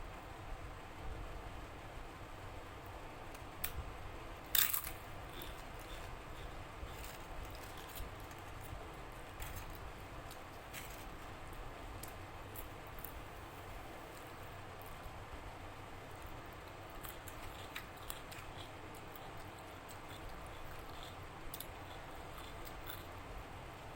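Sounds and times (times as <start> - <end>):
steady low hiss: 0.0 - 23.9
eating clicks and smacks: 16.6 - 23.2.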